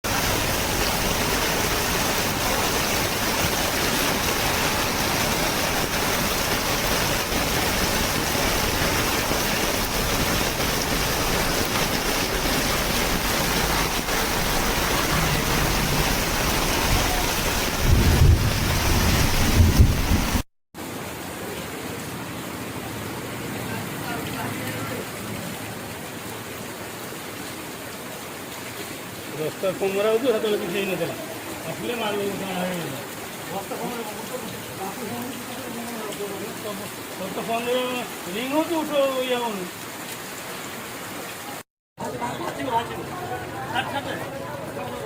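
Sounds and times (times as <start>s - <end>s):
heavy rain pouring: 0.0s - 45.0s
deep thunder rumbles: 3.0s - 20.4s.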